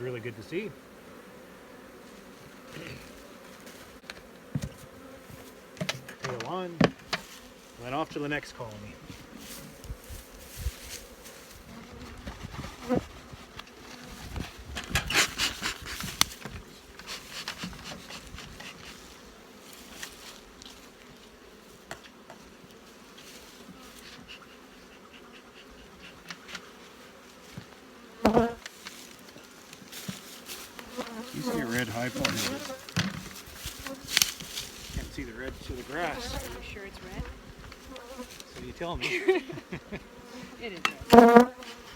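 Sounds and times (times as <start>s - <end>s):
honeybees buzzing: 0.0s - 41.9s
wooden hive equipment clattering: 2.6s - 7.4s, 27.6s - 38.9s.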